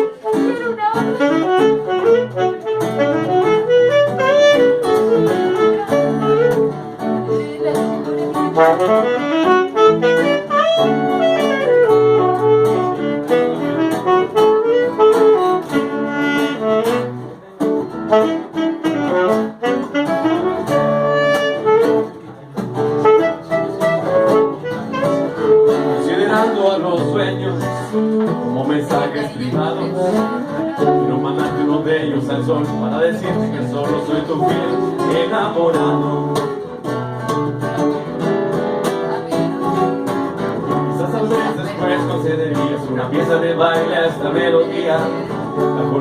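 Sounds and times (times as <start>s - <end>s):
saxophone solo: 0.0s - 26.1s, 27.6s - 28.6s, 29.5s - 31.5s, 33.3s - 35.1s
jazz band accompaniment: 0.0s - 46.0s.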